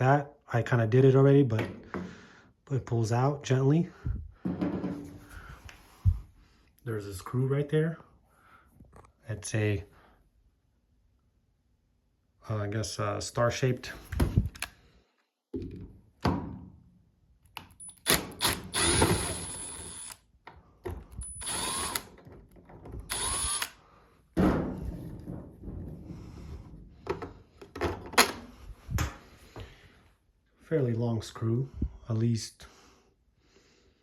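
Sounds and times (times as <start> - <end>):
power drill whirring: 17.8 - 20.3, 21.1 - 22.3, 23.0 - 23.8.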